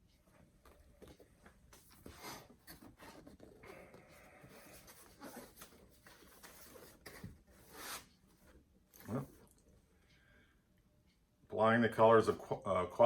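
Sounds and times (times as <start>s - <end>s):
books and paper rustling: 0.6s - 9.5s.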